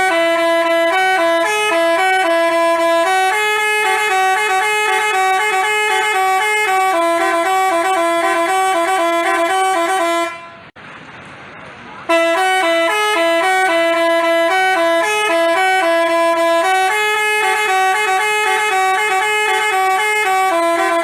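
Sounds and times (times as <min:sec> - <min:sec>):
multi-tone bus horn melody: 0:00.0 - 0:10.8, 0:12.1 - 0:21.0.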